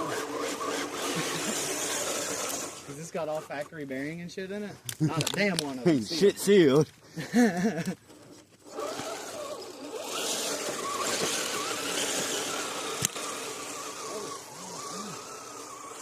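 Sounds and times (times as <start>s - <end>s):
toy car motor whining: 0.0s - 4.1s, 7.6s - 16.0s
hissing grind: 0.0s - 4.2s, 5.2s - 16.0s.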